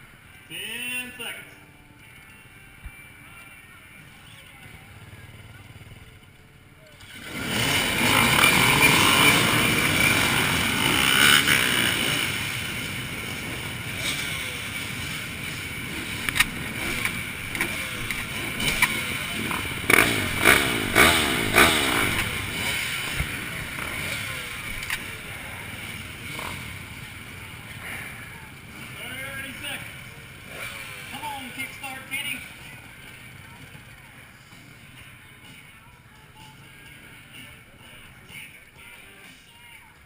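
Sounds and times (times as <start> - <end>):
motocross bike engines revving: 4.4 - 35.6.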